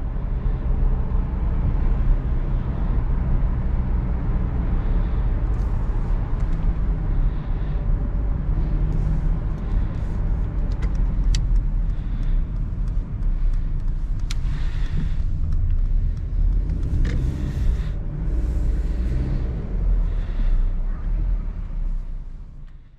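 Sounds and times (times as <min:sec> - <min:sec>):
diesel engine rumble: 0:00.0 - 0:22.9
road noise: 0:00.0 - 0:22.9
sharp clicks: 0:10.5 - 0:17.4.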